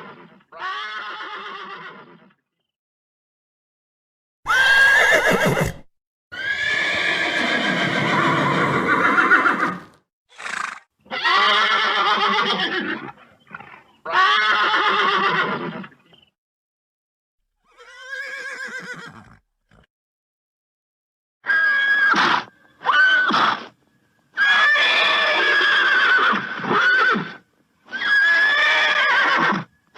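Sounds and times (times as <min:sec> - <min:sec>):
horse neighing: 0:04.5 - 0:16.0, 0:17.7 - 0:19.9.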